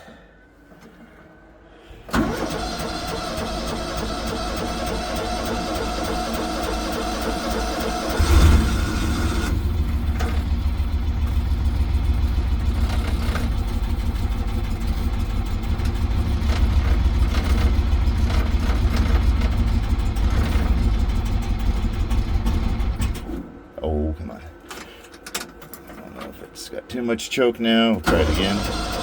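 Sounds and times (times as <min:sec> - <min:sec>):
small gasoline engine running rough: 0:02.2 - 0:23.2, 0:28.1 - 0:29.0.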